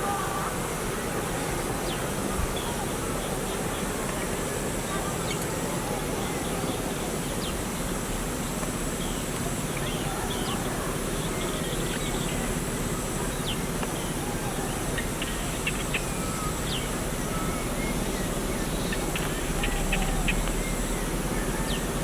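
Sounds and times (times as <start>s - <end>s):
steady background noise: 0.0s - 22.0s
birds chirping: 8.9s - 22.0s.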